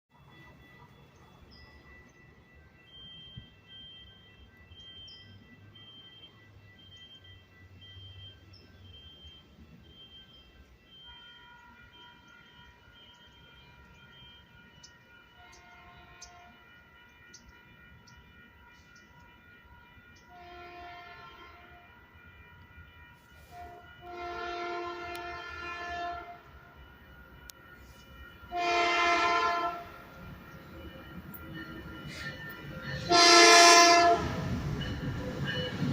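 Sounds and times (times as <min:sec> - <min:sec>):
train air horn blasts: 0:15.4 - 0:16.7, 0:20.2 - 0:22.0, 0:23.2 - 0:26.7, 0:27.8 - 0:30.0, 0:33.0 - 0:34.6.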